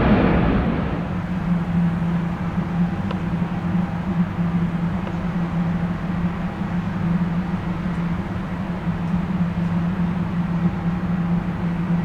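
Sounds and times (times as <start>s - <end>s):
rushing noise: 0.0s - 1.5s
low engine drone: 0.0s - 2.2s.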